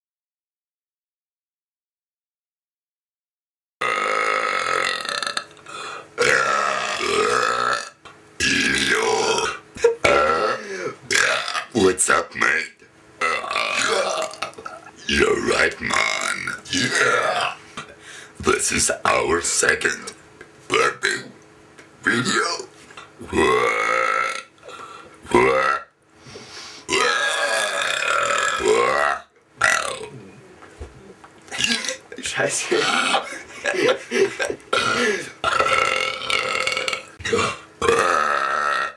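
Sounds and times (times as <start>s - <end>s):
loud human burps: 3.8s - 5.6s, 6.2s - 11.7s, 13.2s - 14.9s, 15.9s - 17.6s, 23.2s - 24.5s, 25.3s - 25.9s, 26.9s - 30.4s, 31.5s - 32.1s, 32.7s - 33.8s, 34.7s - 38.9s.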